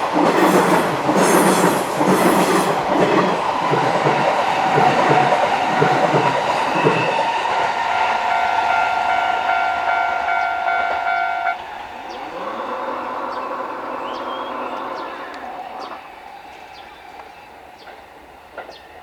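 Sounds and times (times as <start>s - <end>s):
train wheels clacking over rail joints: 0.0s - 16.0s, 17.2s - 19.0s
level crossing warning bell: 7.8s - 16.0s.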